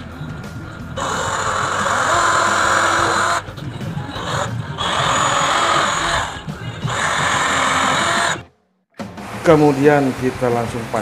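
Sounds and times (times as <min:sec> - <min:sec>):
power drill boring: 0:01.0 - 0:03.5, 0:04.2 - 0:08.5.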